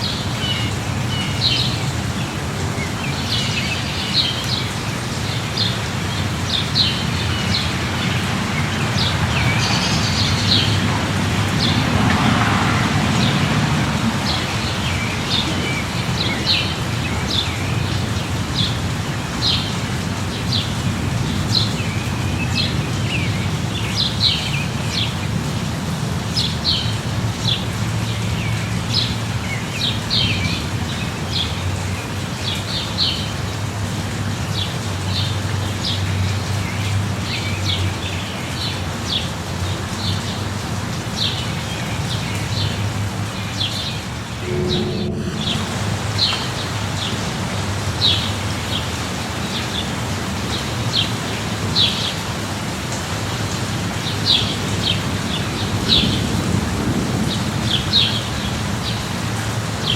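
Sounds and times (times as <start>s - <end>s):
light rain: 0.0s - 59.9s
low rumble: 44.3s - 46.9s.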